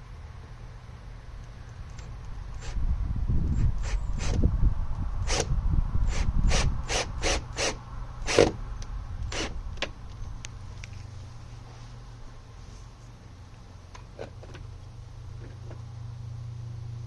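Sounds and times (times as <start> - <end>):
power screwdriver motor: 2.6 - 2.8, 3.6 - 4.4, 5.2 - 8.6, 9.2 - 9.5.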